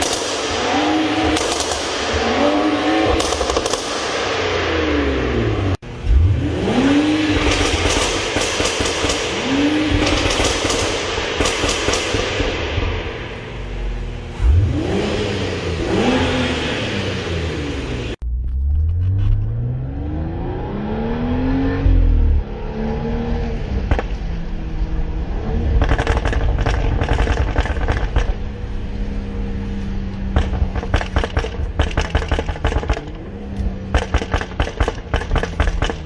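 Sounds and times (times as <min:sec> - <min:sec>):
exhaust pops and crackles: 0:00.0 - 0:02.1, 0:03.0 - 0:04.1, 0:07.4 - 0:13.0, 0:23.8 - 0:24.3, 0:25.7 - 0:28.6, 0:30.1 - 0:36.0
car engine revving: 0:00.0 - 0:36.0.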